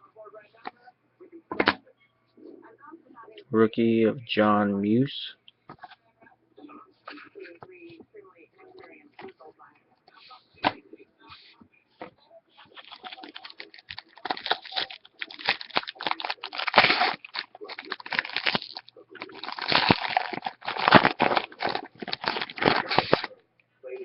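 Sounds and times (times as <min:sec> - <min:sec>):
cards crinkling and rustling: 0:12.6 - 0:23.3.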